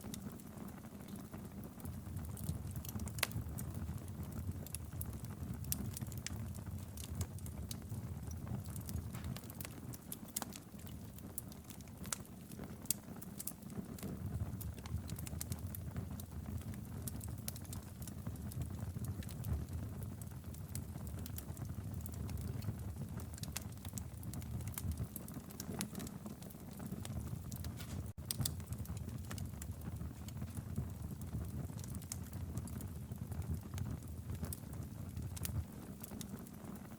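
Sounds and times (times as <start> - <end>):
fire crackling and popping: 0.0 - 36.9
low rumble of flame: 0.0 - 36.9.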